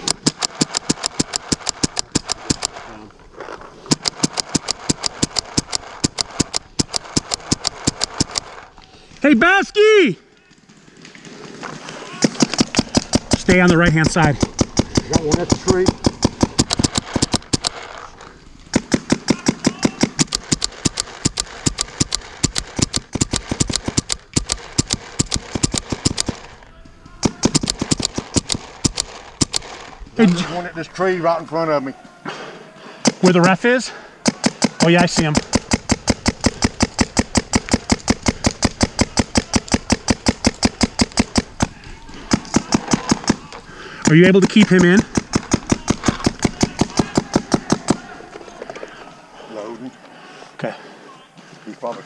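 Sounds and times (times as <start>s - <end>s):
paintball markers firing: 0.0s - 2.9s, 3.8s - 8.8s, 10.5s - 30.4s, 33.0s - 49.0s.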